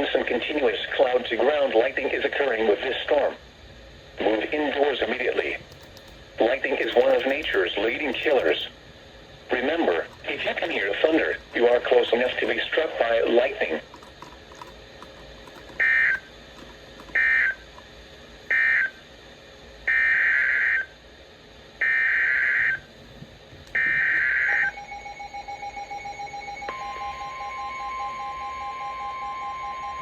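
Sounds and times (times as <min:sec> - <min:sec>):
screechy data bursts: 0:05.4 - 0:08.8, 0:09.5 - 0:17.8, 0:18.5 - 0:19.0.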